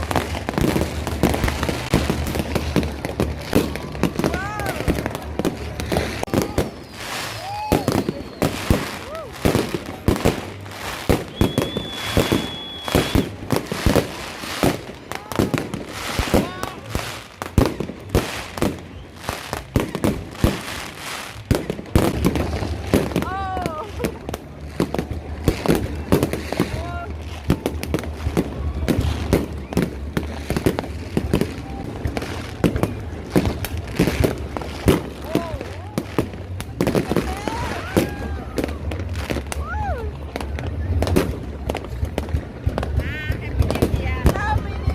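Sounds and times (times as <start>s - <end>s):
fireworks exploding: 0.0s - 44.9s
high firework whistle: 6.3s - 9.7s, 11.0s - 14.9s.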